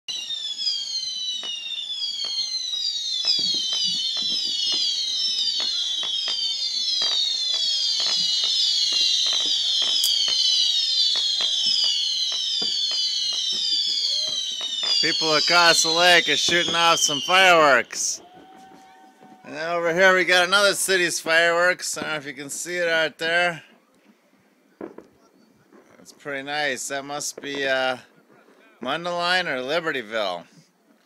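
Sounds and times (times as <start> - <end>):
high falling whistles: 0.1 - 21.7
fireworks popping: 0.1 - 30.2.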